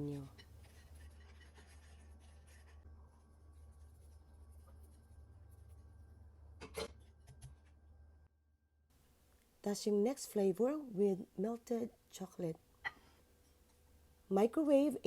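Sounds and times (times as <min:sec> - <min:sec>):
faint scratchy rubbing: 0:00.4 - 0:05.2
scrape: 0:00.4 - 0:05.8.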